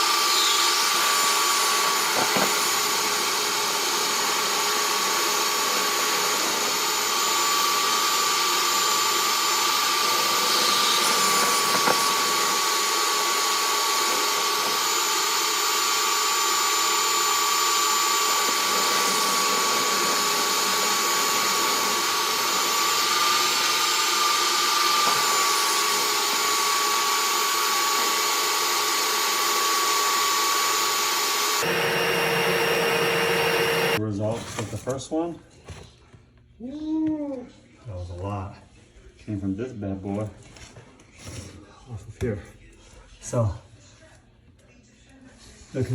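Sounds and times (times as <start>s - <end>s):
motor whine: 0.0s - 34.0s.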